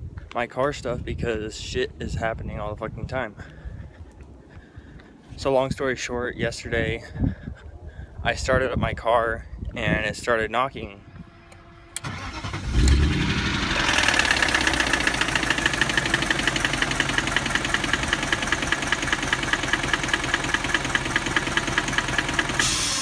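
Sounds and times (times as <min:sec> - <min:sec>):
car engine cranking: 0:12.0 - 0:23.0
engine idling with knock: 0:13.8 - 0:23.0.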